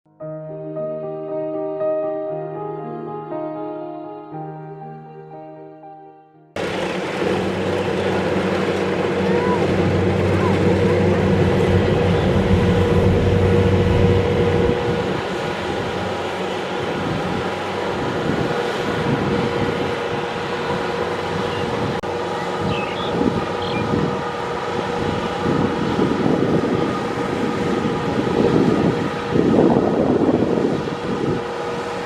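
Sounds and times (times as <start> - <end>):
combine harvester diesel engine: 6.6 - 32.0
wind noise on microphone: 6.6 - 32.0.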